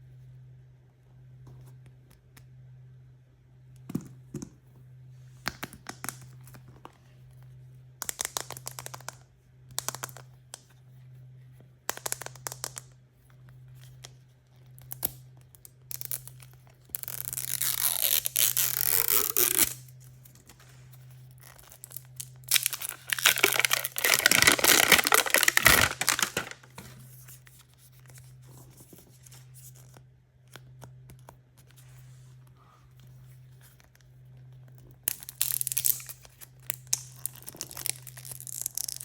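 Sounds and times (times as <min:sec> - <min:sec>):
packaging torn open: 0:15.9 - 0:20.5, 0:21.4 - 0:27.6, 0:35.1 - 0:39.0
packaging crinkling: 0:17.0 - 0:20.6, 0:21.4 - 0:27.3.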